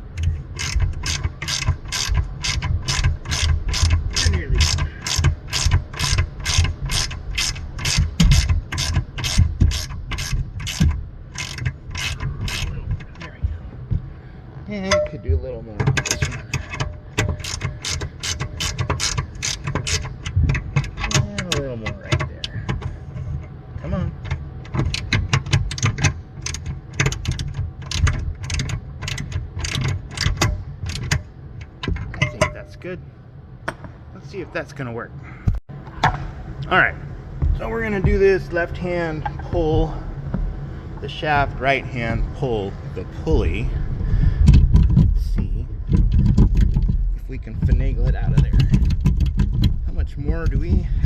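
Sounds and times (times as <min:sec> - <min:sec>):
ratchet wrench clicking: 0:00.2 - 0:12.8, 0:16.0 - 0:21.2.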